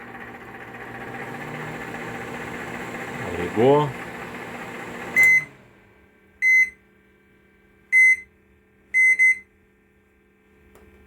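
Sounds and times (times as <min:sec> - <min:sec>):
short high microwave beeps: 0:05.2 - 0:05.5, 0:06.4 - 0:06.8, 0:07.9 - 0:08.3, 0:09.0 - 0:09.5.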